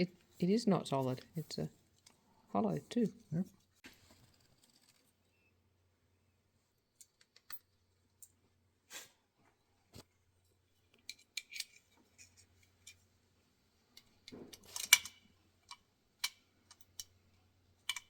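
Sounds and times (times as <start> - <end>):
small metal parts clicking: 14.0 - 17.2, 17.8 - 18.0.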